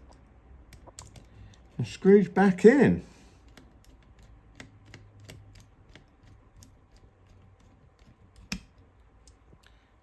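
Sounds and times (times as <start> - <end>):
small screws clicking: 3.4 - 9.4.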